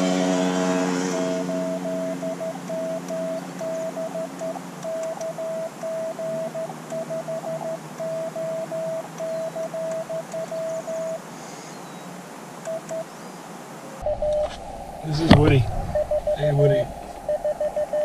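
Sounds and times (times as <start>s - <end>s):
morse code tone: 0.0s - 11.2s, 12.7s - 13.0s, 14.0s - 18.0s
low hum: 14.0s - 18.0s
radio band hiss: 14.1s - 18.0s.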